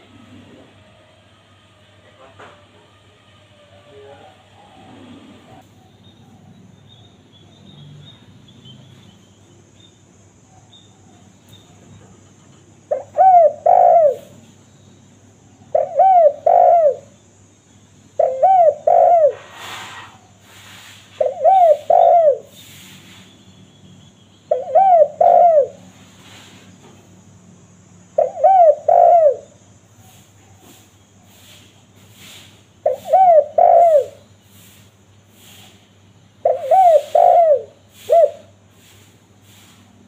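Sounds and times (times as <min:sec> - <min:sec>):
dove cooing: 0:04.0 - 0:05.6, 0:12.9 - 0:14.4, 0:15.7 - 0:17.2, 0:18.2 - 0:20.0, 0:21.2 - 0:22.6, 0:24.5 - 0:25.8, 0:28.2 - 0:29.6, 0:32.8 - 0:34.2, 0:36.4 - 0:38.6
hissing rustles: 0:18.9 - 0:23.5, 0:25.9 - 0:27.1, 0:29.9 - 0:36.0, 0:36.7 - 0:40.0.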